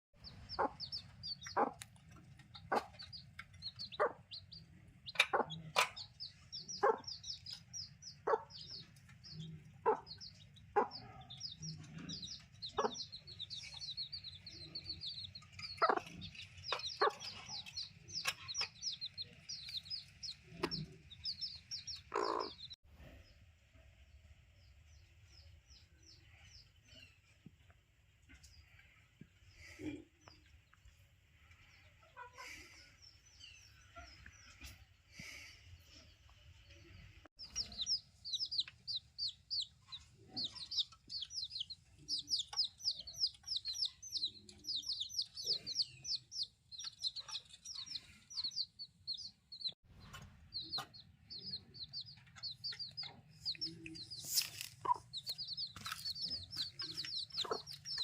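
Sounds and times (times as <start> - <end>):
hen clucking: 0.2 - 22.8, 36.9 - 58.0
chicks peeping: 0.2 - 23.4, 31.5 - 58.0.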